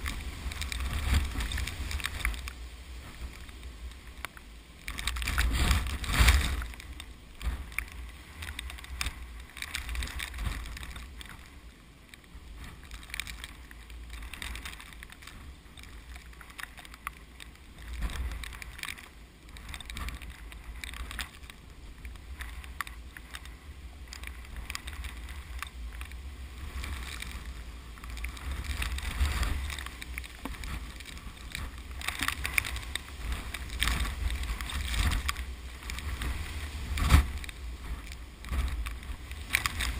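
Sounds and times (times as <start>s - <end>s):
strong wind buffeting microphone: 0.0s - 12.8s
rustle of rice plants: 0.0s - 39.9s.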